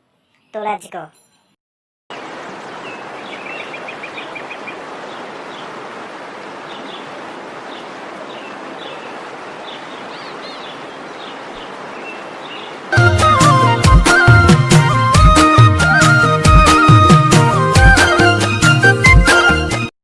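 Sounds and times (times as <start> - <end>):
small birds chirping: 0.0 - 1.6, 2.6 - 12.9
waterfall rushing: 2.1 - 18.7.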